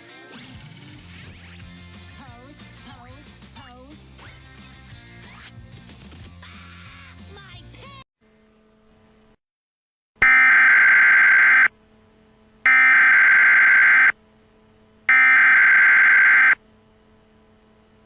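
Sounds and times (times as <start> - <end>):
harsh data screeches: 10.2 - 11.7, 12.7 - 14.1, 15.1 - 16.6.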